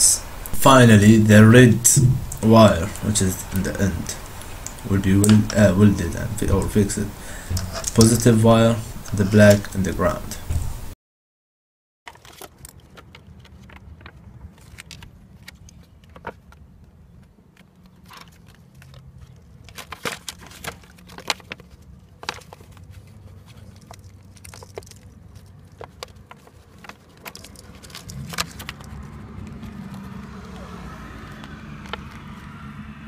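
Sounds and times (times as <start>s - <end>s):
steady low hum: 0.0s - 11.0s
wires and tools clicking: 2.2s - 10.9s, 17.6s - 32.4s.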